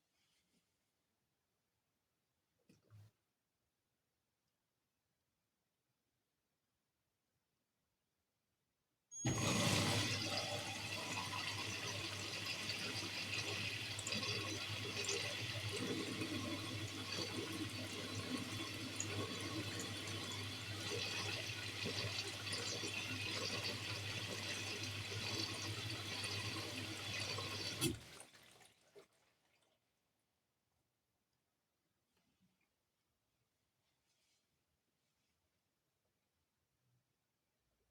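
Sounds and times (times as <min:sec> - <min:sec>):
washing machine low hum: 0:09.2 - 0:29.2
water sloshing in washing machine: 0:09.3 - 0:29.9.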